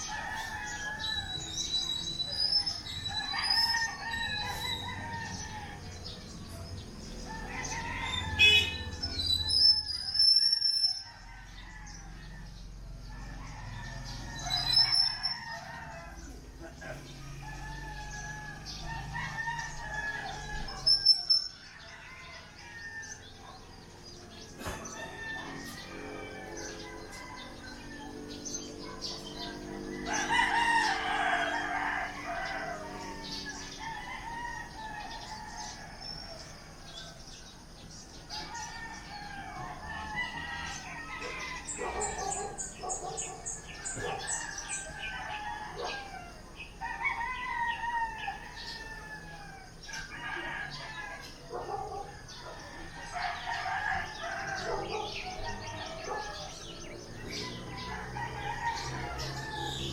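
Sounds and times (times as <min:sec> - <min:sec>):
roosters crowing: 0:00.0 - 0:59.9
small birds chirping: 0:00.0 - 0:59.9
chickens clucking: 0:41.2 - 0:44.6.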